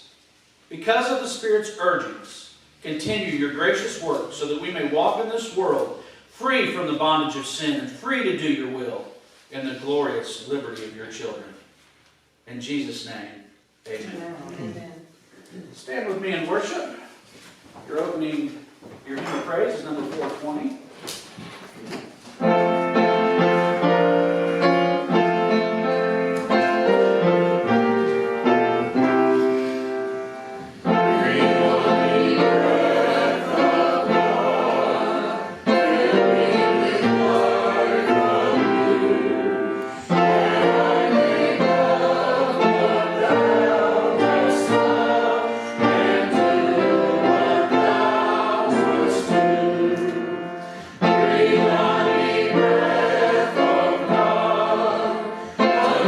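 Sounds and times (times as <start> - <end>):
congregation singing a hymn: 22.4 - 56.0
instrumental accompaniment: 22.4 - 56.0.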